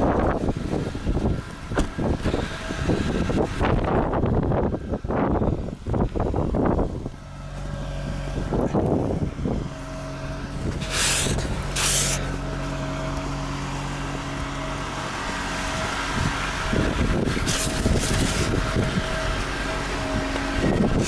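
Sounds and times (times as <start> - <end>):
cold car engine idling: 0.0 - 21.0
short scrapes: 10.7 - 12.3, 17.3 - 18.6.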